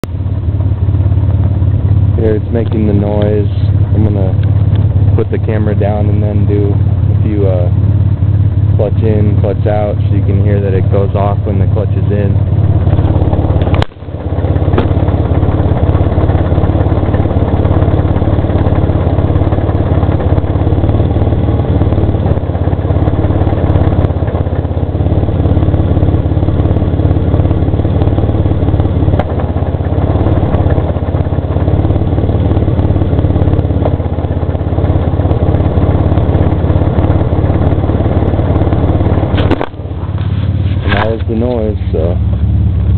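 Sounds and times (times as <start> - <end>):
car engine idling: 0.0 - 42.9
clutch noise: 10.4 - 42.2.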